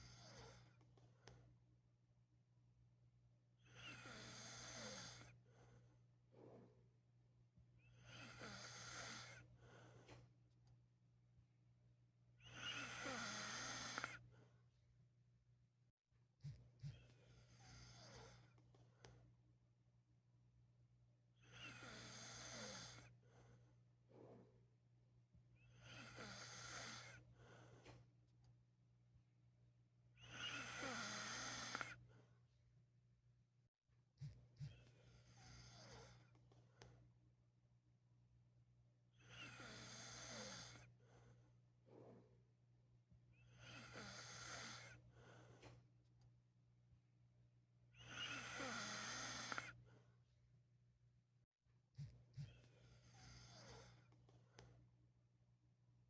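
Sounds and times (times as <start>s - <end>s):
man snoring softly: 3.7s - 5.4s, 8.0s - 9.5s, 12.5s - 14.2s, 16.8s - 18.6s, 21.4s - 23.2s, 25.7s - 27.3s, 30.2s - 32.0s, 39.2s - 40.9s, 43.5s - 45.0s, 48.0s - 49.8s, 52.0s - 54.1s
man snoring: 12.6s - 14.2s, 30.3s - 32.0s, 48.1s - 49.7s.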